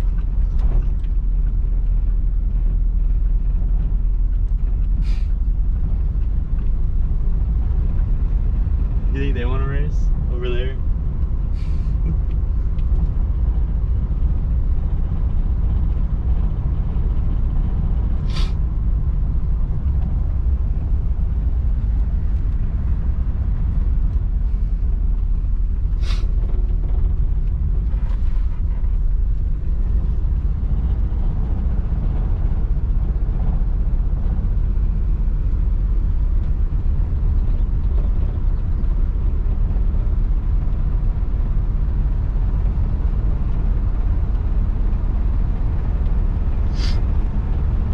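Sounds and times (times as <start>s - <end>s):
car engine and road rumble: 0.0s - 47.9s.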